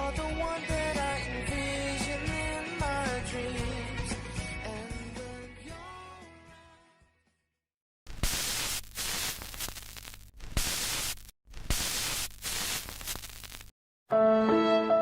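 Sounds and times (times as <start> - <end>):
music: 0.0 - 7.5, 14.1 - 15.0
static-like hiss: 8.1 - 13.7.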